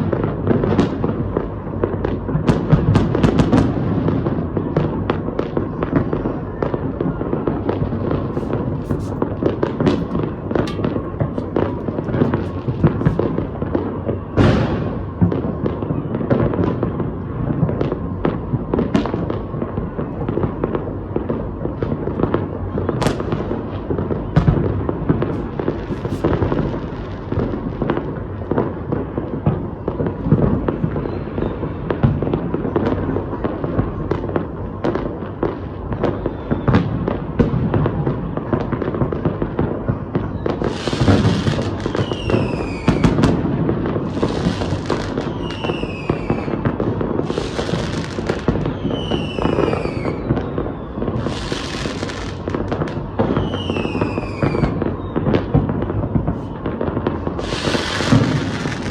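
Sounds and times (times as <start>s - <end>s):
fireworks bangs and crackles: 0.0s - 58.9s
falling firework whistle: 3.0s - 17.1s, 17.7s - 58.9s.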